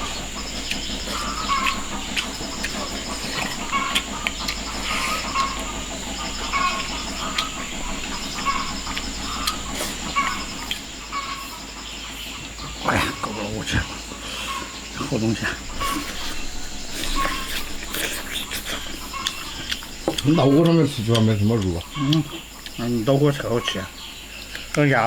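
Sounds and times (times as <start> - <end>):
animal call: 0.0 - 25.0
steady high hiss: 0.0 - 25.0.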